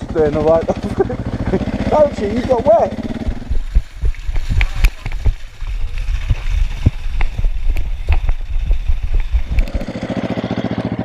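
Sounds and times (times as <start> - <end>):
motorcycle engine idling: 0.0 - 5.5
engine knocks and clatters: 0.0 - 11.0.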